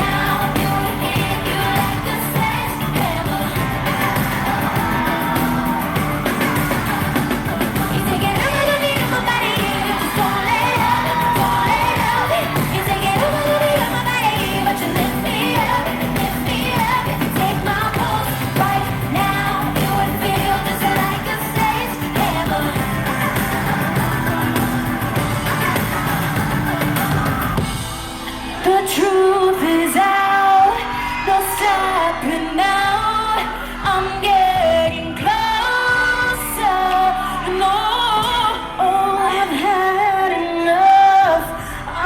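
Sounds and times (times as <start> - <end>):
female vocals singing pop: 0.0 - 42.0
live band backing: 0.0 - 42.0.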